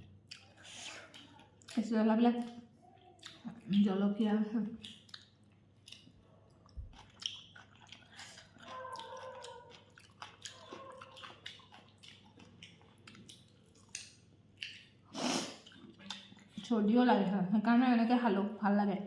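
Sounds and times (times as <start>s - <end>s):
person chewing food: 0.0s - 3.9s, 4.8s - 16.7s
wet mouth clicks and smacks: 0.2s - 1.8s, 2.4s - 3.8s, 4.8s - 15.0s, 15.6s - 16.6s.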